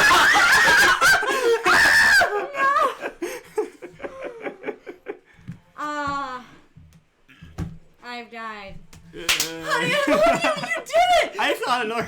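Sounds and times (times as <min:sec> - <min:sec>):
group laughing and shrieking: 0:00.0 - 0:03.4, 0:09.6 - 0:12.0.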